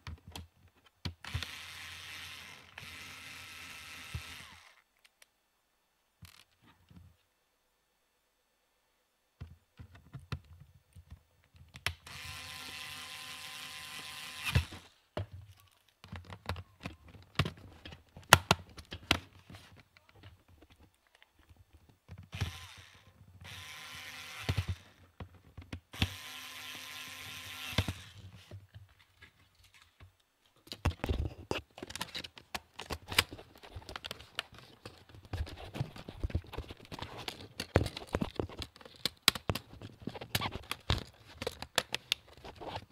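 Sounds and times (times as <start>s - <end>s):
electric screwdriver running: 1.3s - 4.8s, 12.0s - 14.9s, 22.3s - 25.0s, 26.0s - 28.3s
small parts clicking and clattering: 28.8s - 42.8s.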